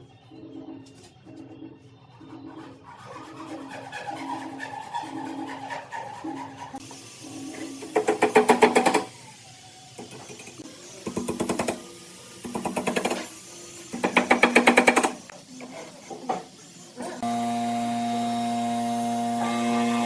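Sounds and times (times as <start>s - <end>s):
music: 0.0s - 3.9s
woodworking power tool rattling: 7.8s - 9.2s, 13.9s - 15.3s.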